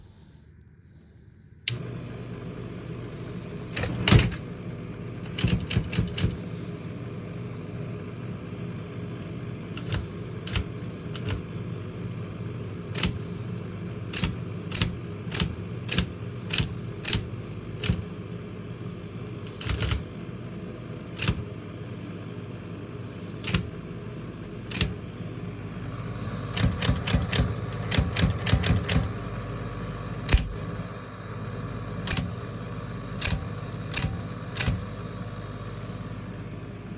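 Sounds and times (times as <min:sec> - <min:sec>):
typewriter motor hum: 0:01.7 - 0:36.9
typewriter keystrokes: 0:03.7 - 0:04.5, 0:05.2 - 0:06.6, 0:09.2 - 0:11.6, 0:12.8 - 0:13.4, 0:14.1 - 0:18.2, 0:19.4 - 0:20.2, 0:21.1 - 0:21.5, 0:23.4 - 0:23.8, 0:24.7 - 0:25.1, 0:26.2 - 0:29.2, 0:30.2 - 0:30.6, 0:32.0 - 0:32.5, 0:33.1 - 0:35.0.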